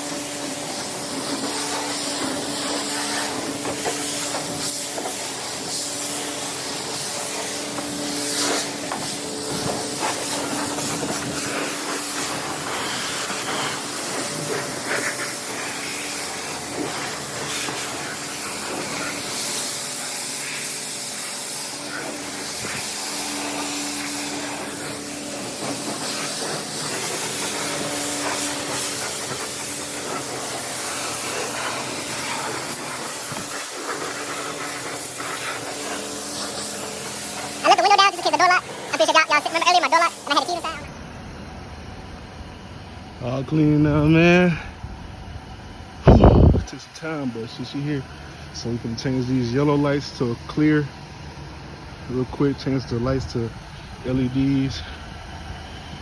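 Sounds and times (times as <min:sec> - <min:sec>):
pressure washer spray hissing: 0:00.0 - 0:40.9
steady hum: 0:00.0 - 0:56.0.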